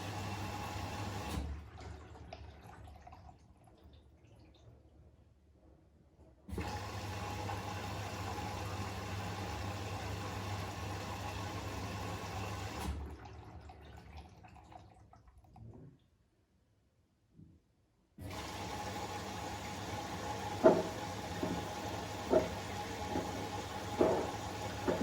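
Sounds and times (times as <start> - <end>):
water rushing into drum: 20.1 - 25.0
water trickling in drum: 20.6 - 25.0.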